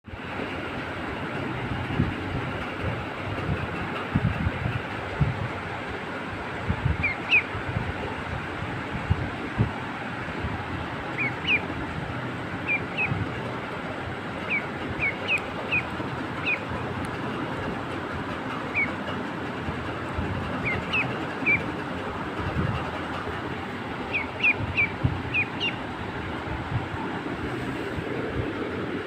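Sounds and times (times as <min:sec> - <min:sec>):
duckling peeping: 0:06.9 - 0:07.6, 0:11.0 - 0:11.8, 0:12.6 - 0:13.6, 0:14.3 - 0:17.4, 0:18.5 - 0:19.1, 0:20.0 - 0:21.9, 0:24.0 - 0:25.8.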